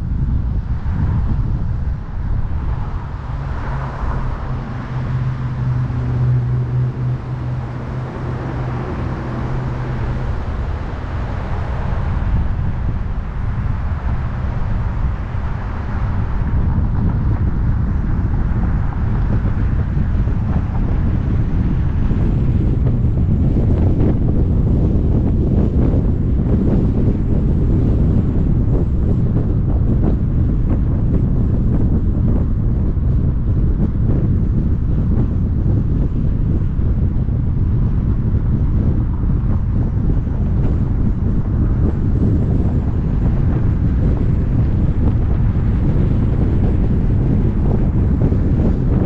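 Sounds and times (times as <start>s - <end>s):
low car hum: 0.0s - 49.0s
tyre and wind noise: 0.0s - 49.0s.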